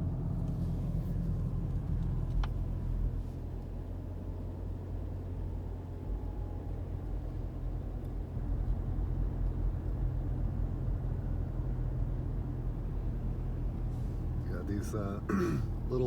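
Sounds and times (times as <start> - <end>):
car road and engine rumble: 0.0 - 16.0.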